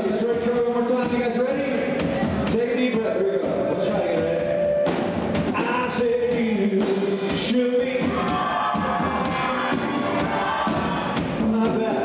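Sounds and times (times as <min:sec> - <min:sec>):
country band music: 0:00.0 - 0:12.0
drum hits: 0:00.0 - 0:12.0
person singing: 0:05.5 - 0:12.0.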